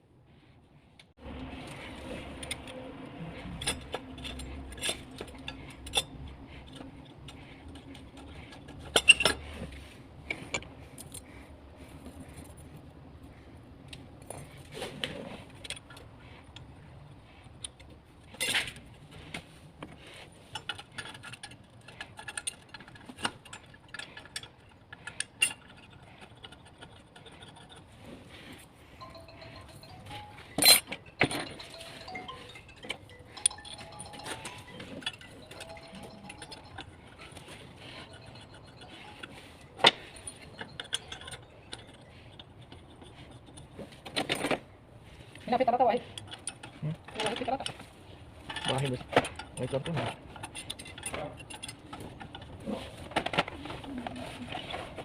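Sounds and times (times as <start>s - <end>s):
metallic clinks and knocks: 1.4s - 11.3s, 20.4s - 45.4s, 46.0s - 55.0s.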